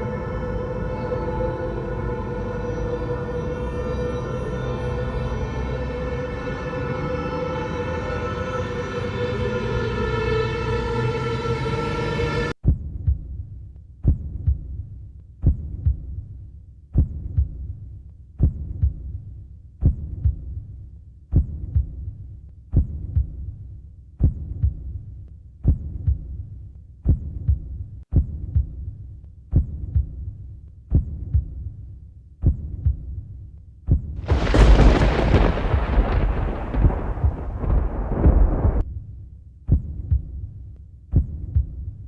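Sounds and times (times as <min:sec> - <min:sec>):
heartbeat thumps: 0:12.6 - 0:39.0, 0:39.6 - 0:42.0
loud rumbling noise: 0:34.3 - 0:38.9.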